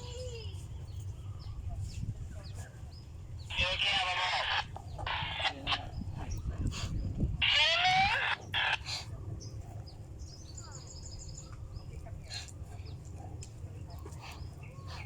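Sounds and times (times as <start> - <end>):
harsh bird call: 3.4 - 6.1, 7.4 - 9.1.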